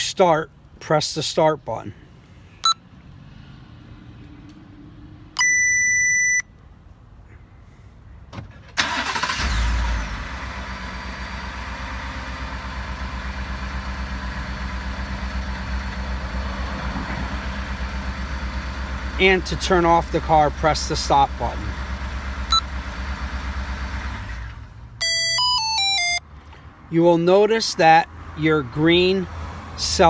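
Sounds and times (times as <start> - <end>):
electronic beep: 5.4 - 6.5, 25.0 - 26.2
pickup engine starting and idling: 8.4 - 26.2.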